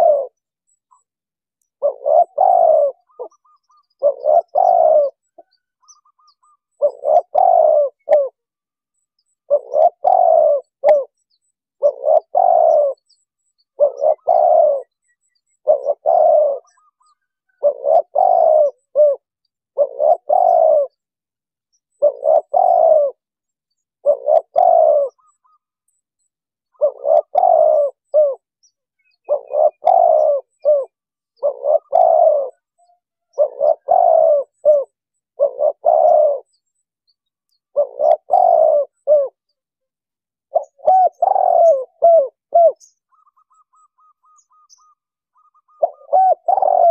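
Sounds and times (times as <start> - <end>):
dove cooing: 0.0 - 1.1, 1.8 - 8.5, 9.2 - 21.1, 21.8 - 25.8, 26.6 - 36.8, 37.6 - 39.6, 40.4 - 46.9.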